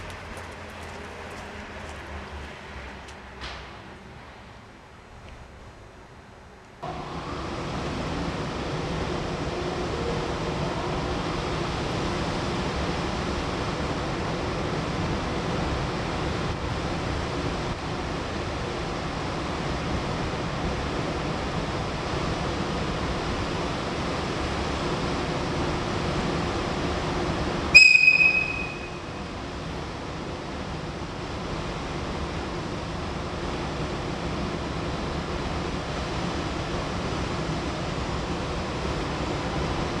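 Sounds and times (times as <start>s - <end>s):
train running: 0.0s - 5.6s, 6.6s - 40.0s
high-pitched train whistle: 27.7s - 29.2s.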